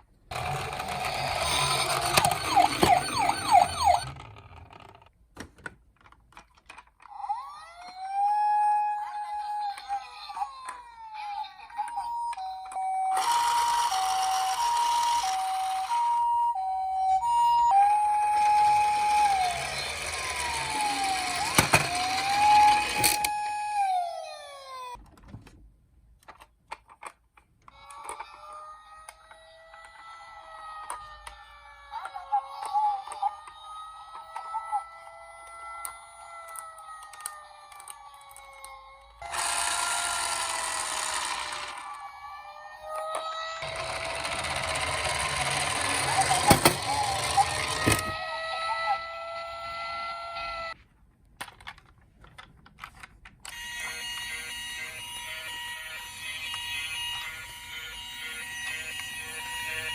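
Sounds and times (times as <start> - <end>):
toy siren chirps: 0.3 - 4.7, 7.6 - 25.0, 27.8 - 50.8, 53.5 - 59.9
toy siren wail: 0.3 - 4.8, 7.0 - 25.0, 27.7 - 50.8, 53.5 - 59.9
small toy motor whirring: 0.3 - 5.0, 7.1 - 16.3, 17.8 - 25.0, 27.7 - 50.8, 53.4 - 59.9
clicks: 0.3 - 7.0.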